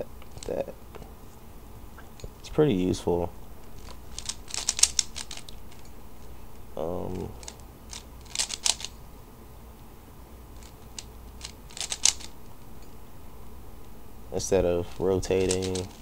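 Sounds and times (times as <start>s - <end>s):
puzzle cube clacking: 3.7s - 5.9s, 7.1s - 9.0s, 10.6s - 12.4s, 14.9s - 16.0s.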